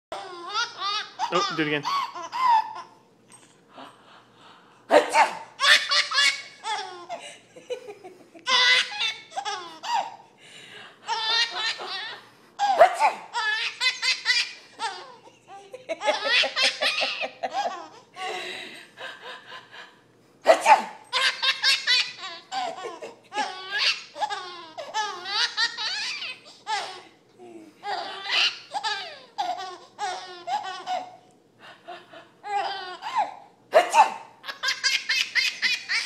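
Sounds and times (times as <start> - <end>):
baby laughing: 0.2 - 3.0, 4.9 - 7.2, 8.4 - 10.2, 11.1 - 18.1, 20.5 - 27.2, 27.8 - 31.2, 32.2 - 36.0.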